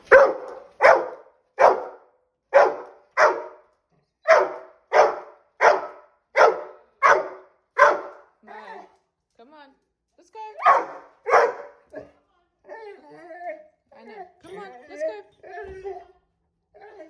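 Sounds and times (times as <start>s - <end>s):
dog barking: 0.0s - 3.6s, 4.3s - 8.3s, 10.6s - 12.1s.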